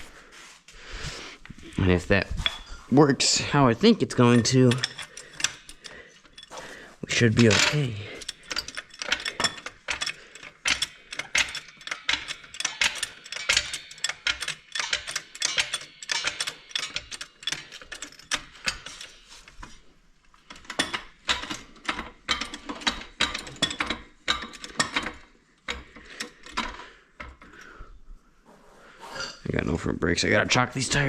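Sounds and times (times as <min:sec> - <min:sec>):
ratchet clicking: 0:07.4 - 0:19.1.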